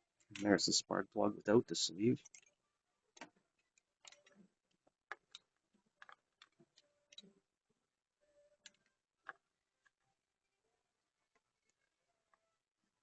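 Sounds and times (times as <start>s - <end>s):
clicks and taps of small tools: 5.1s - 7.3s.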